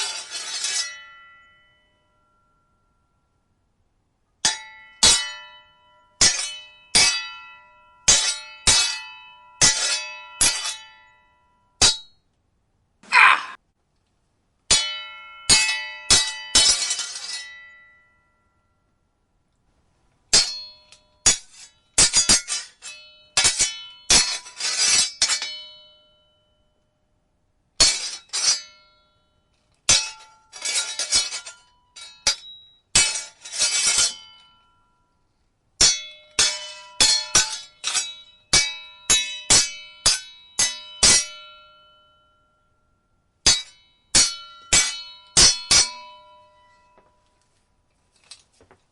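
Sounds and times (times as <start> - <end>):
sword blades clashing: 0.0 - 1.4, 4.4 - 11.0, 11.8 - 12.1, 14.7 - 17.7, 20.3 - 25.9, 27.8 - 28.9, 29.9 - 34.6, 35.8 - 41.9, 43.4 - 46.6.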